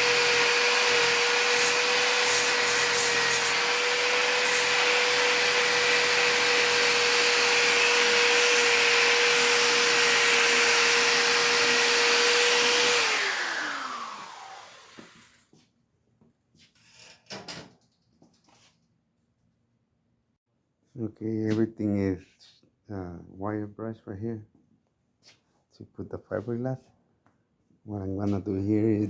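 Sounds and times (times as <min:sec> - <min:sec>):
power tool wire brush whining: 0:00.0 - 0:15.5.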